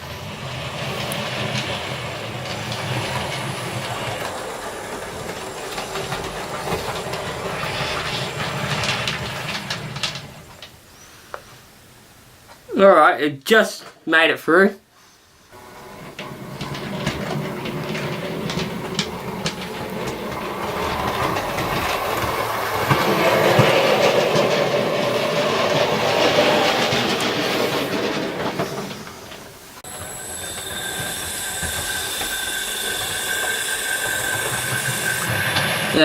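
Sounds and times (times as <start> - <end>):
model train wheels rumbling: 0.0 - 12.6, 15.2 - 36.0
clicks over rail joints: 0.5 - 11.5, 15.6 - 29.8
high motor whine: 29.8 - 36.0.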